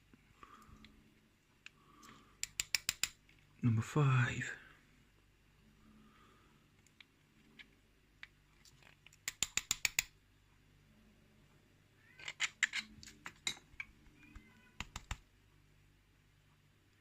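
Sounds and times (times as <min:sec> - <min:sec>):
small metallic clicks from lock: 0:02.4 - 0:03.2, 0:09.2 - 0:10.1.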